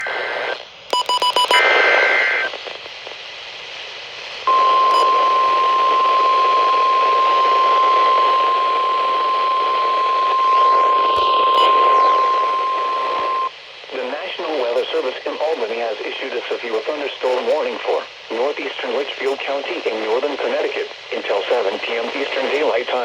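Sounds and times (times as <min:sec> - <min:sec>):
radio hiss: 0:00.0 - 0:23.0
short electronic beeps: 0:04.5 - 0:13.5
steady warning alarm tone: 0:04.5 - 0:13.5
two-tone digital data burst: 0:04.5 - 0:13.5.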